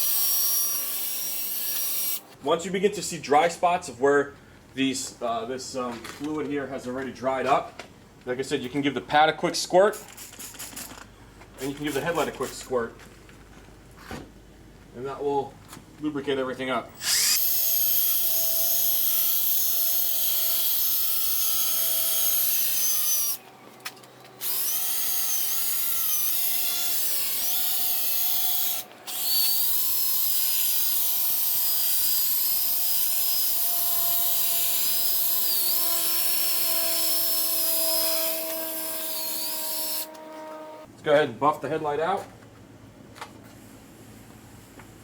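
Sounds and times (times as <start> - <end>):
electric drill polishing whine: 17.0 - 23.4, 37.3 - 40.8.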